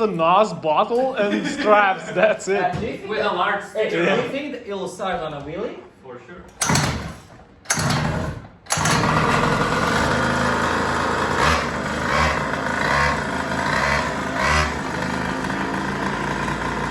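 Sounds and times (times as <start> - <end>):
engine throttle blips: 6.6 - 16.9
pocket bike engine running: 6.6 - 16.9.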